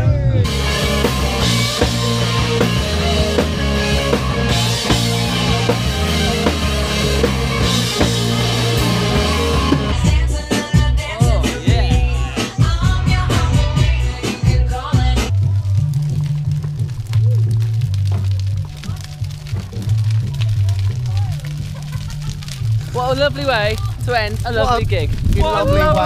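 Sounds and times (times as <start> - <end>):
rock band music: 0.0 - 16.2
drum kit: 0.0 - 17.0.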